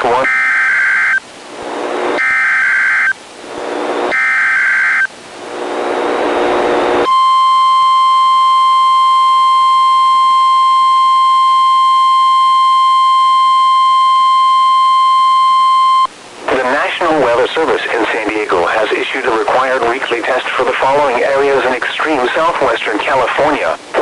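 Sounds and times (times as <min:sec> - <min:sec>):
steady warning alarm tone: 0:00.1 - 0:01.2, 0:02.2 - 0:03.2, 0:04.1 - 0:05.1
radio hiss: 0:01.3 - 0:02.2, 0:03.2 - 0:04.1, 0:05.2 - 0:07.1, 0:16.2 - 0:24.0.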